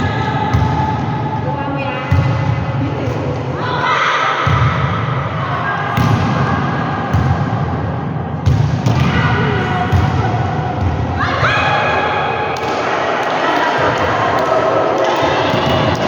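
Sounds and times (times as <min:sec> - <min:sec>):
ball bouncing on gym floor: 0:08.4 - 0:09.2.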